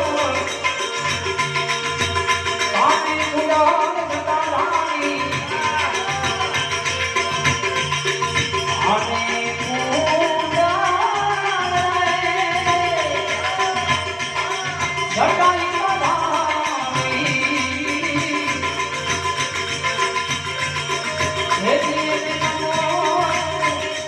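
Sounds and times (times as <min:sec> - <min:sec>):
tabla percussion rhythm: 0:00.0 - 0:24.0.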